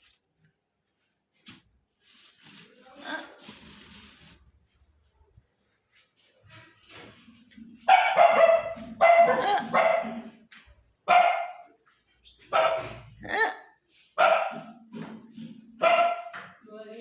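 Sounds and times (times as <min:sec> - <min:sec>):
dog barking: 0:07.8 - 0:10.4, 0:11.0 - 0:11.8, 0:12.4 - 0:13.6, 0:14.2 - 0:14.9, 0:15.8 - 0:16.6.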